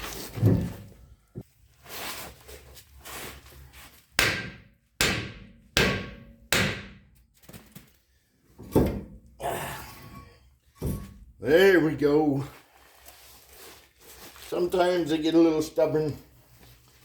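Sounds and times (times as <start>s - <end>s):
hammer striking metal: 4.2s - 7.1s.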